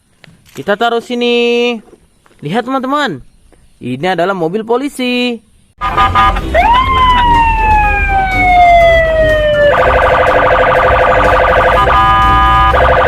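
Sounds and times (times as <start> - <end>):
fast pulsing electronic tone: 6.0 - 13.0
toy police siren wailing: 6.6 - 13.0.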